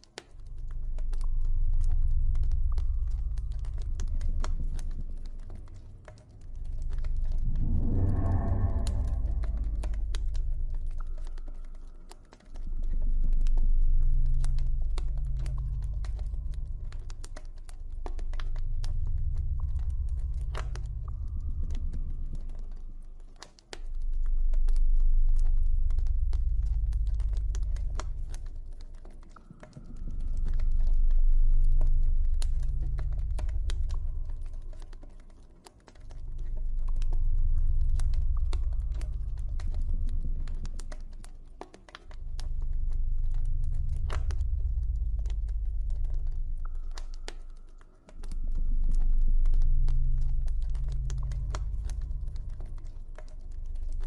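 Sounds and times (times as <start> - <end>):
deep ambient drone: 0.0 - 54.0
campfire crackling and popping: 30.4 - 54.0.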